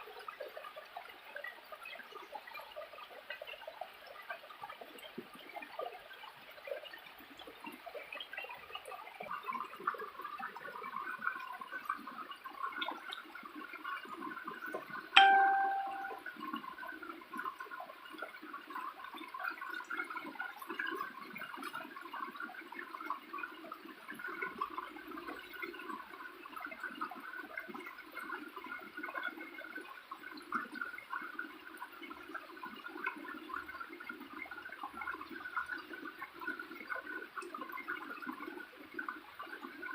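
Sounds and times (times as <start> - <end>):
sharp ringing clink: 15.2 - 16.2.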